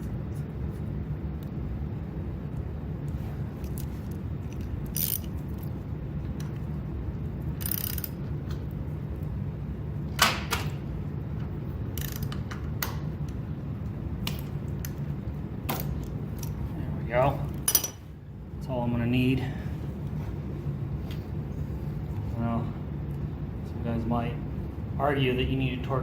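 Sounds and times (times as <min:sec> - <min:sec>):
steady low hum: 0:00.0 - 0:26.0
ratchet rasping: 0:03.6 - 0:05.7, 0:07.6 - 0:08.2, 0:12.0 - 0:12.4.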